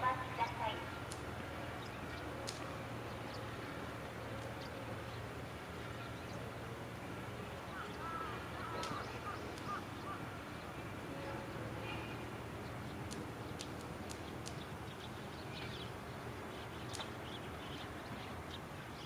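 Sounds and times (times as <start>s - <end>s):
faint clicks: 1.0s - 2.7s, 8.6s - 9.8s, 13.0s - 14.6s, 16.9s - 17.2s
bird calls: 7.5s - 19.0s.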